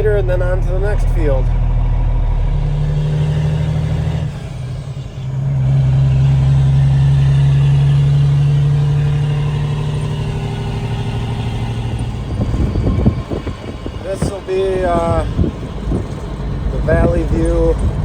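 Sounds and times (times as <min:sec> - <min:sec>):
diesel truck engine pulling away: 0:00.0 - 0:18.0.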